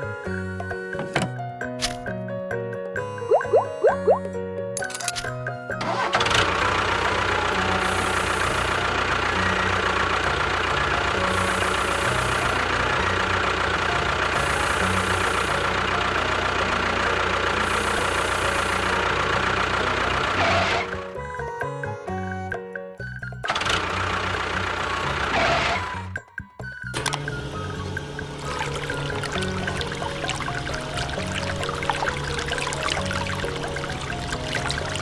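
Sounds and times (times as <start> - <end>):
small engine running: 4.8 - 21.5, 23.5 - 26.2, 26.9 - 35.0.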